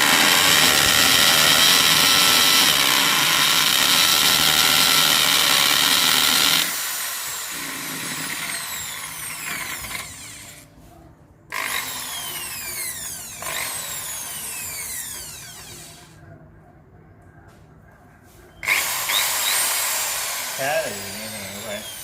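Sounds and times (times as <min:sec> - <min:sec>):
hammer drill running and winding down: 0:00.0 - 0:10.6, 0:18.6 - 0:22.0.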